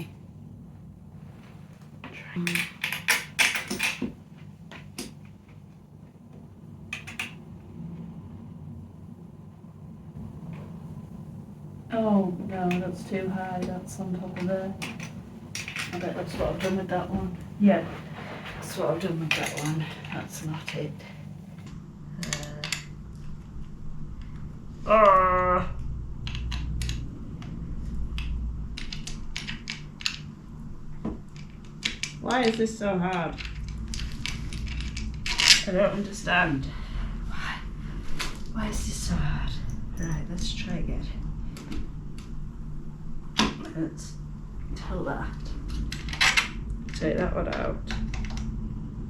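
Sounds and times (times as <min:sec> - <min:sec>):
low handling rumble: 0:04.1 - 0:22.1, 0:32.8 - 0:49.0
plastic parts clicking: 0:07.0 - 0:07.4.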